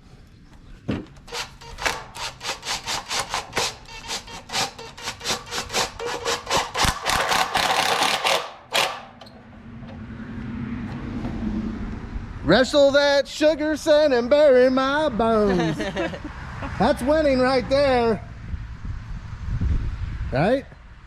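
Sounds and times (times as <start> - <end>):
rhythmic rasping strokes: 1.3 - 9.1.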